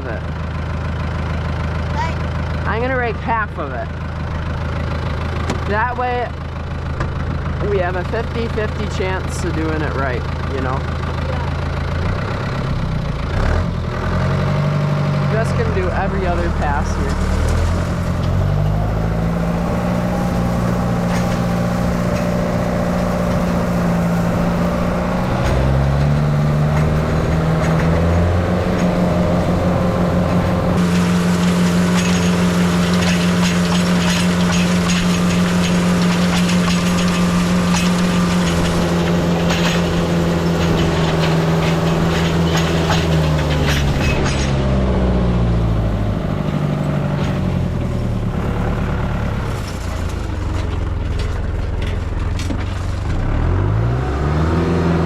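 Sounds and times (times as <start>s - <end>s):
tractor engine running: 0.0s - 55.0s
clattering rattle: 15.4s - 44.8s, 49.2s - 53.2s.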